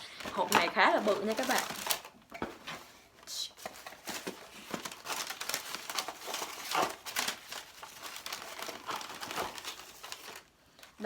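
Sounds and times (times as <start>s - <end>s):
packaging rustling and crinkling: 0.0s - 11.0s.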